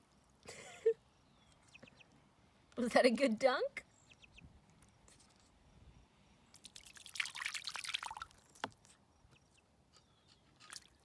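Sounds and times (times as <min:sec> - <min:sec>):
gosling splashing in water: 0:06.6 - 0:08.7.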